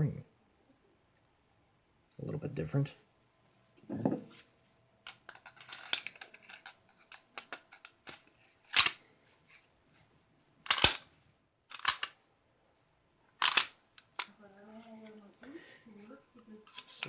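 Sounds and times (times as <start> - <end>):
small metal clicks: 5.0 - 9.0, 10.6 - 11.0, 11.7 - 12.2, 13.4 - 14.3
pistol slide metallic clacks: 5.1 - 9.0, 10.7 - 11.1, 11.7 - 12.2, 13.4 - 14.3.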